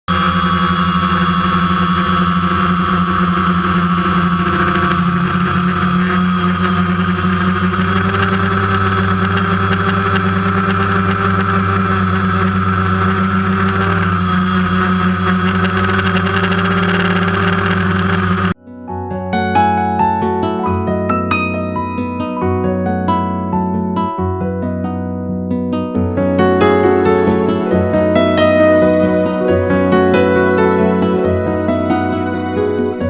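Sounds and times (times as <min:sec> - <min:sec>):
helicopter engine drone: 0:00.0 - 0:18.6, 0:26.0 - 0:33.0
high whine: 0:00.0 - 0:22.8, 0:25.8 - 0:33.0.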